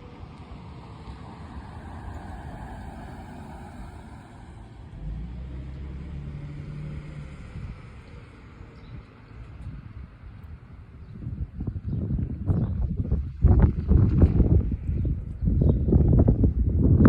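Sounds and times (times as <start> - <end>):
road noise hiss: 0.0 - 9.5
low engine hum: 0.0 - 17.0.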